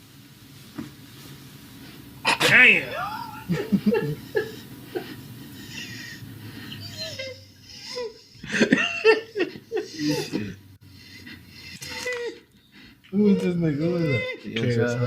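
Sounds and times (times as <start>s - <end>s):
people laughing hard: 2.8s - 5.2s, 8.3s - 10.4s.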